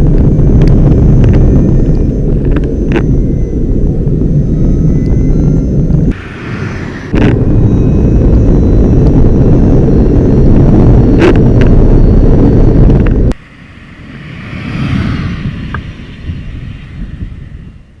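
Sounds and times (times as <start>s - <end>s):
faint high steady whine: 0.0s - 18.0s
wind and road rumble: 0.0s - 18.0s
car passing by: 13.4s - 18.0s.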